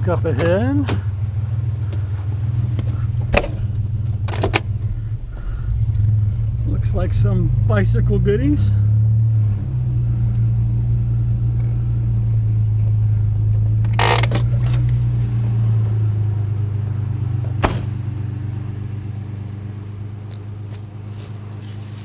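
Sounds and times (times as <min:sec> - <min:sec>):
truck engine drone in cab: 0:00.0 - 0:22.0.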